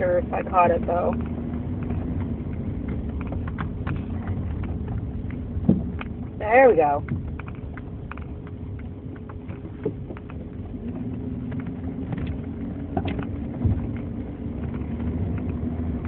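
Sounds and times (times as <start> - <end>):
engine and tyre rumble: 0.0 - 16.0
heavy low thump: 3.2 - 6.4.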